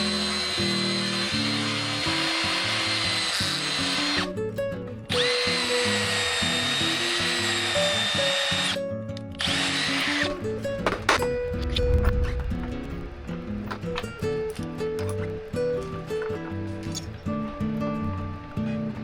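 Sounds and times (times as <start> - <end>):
power drill whining: 0.0 - 4.3, 5.1 - 8.8, 9.4 - 11.2.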